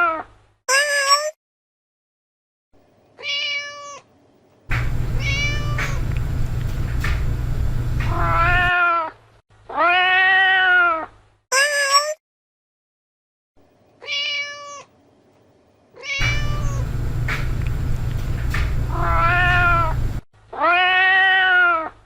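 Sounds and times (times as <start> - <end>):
cat meowing: 3.2 - 4.1, 4.7 - 6.1, 8.0 - 12.1, 14.0 - 14.9, 16.0 - 16.9, 18.9 - 20.0, 20.6 - 22.0
low rumble and hiss: 4.2 - 8.7, 15.0 - 20.2.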